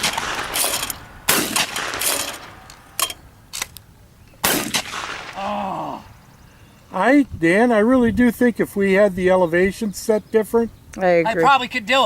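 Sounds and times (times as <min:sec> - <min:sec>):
shotgun shots echoing: 0:00.0 - 0:02.8, 0:04.4 - 0:05.4
sharp quieter crack: 0:00.0 - 0:03.8, 0:04.4 - 0:05.8.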